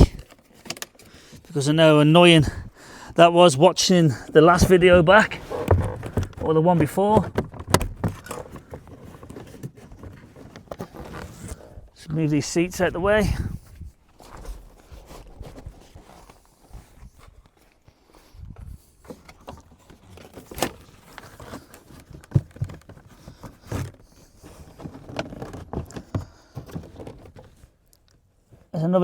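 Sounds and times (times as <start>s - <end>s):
hands moving car seats: 3.9s - 11.8s, 19.1s - 27.8s.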